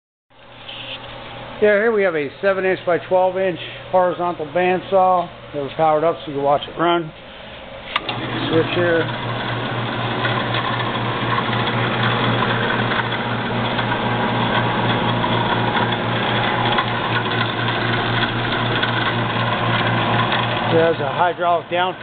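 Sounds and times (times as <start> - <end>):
band saw running: 7.9 - 22.0.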